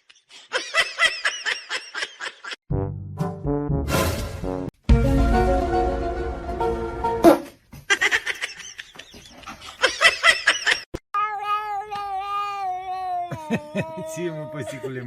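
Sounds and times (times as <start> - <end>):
music: 2.7 - 7.3
cat crying and yowling: 11.2 - 15.0.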